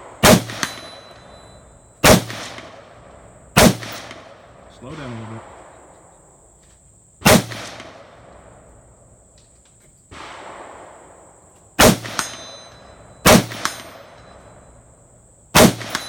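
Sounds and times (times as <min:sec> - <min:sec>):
rifle shots with echo: 0:00.0 - 0:06.3, 0:07.2 - 0:09.0, 0:10.1 - 0:14.8, 0:15.5 - 0:16.0
metallic ring and clinks: 0:00.6 - 0:01.8, 0:12.2 - 0:14.8.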